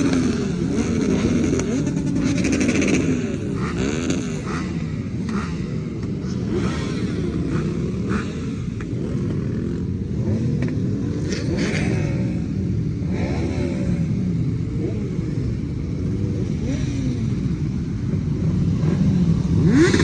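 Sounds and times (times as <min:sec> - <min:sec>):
motorcycles riding past: 0:00.0 - 0:20.0.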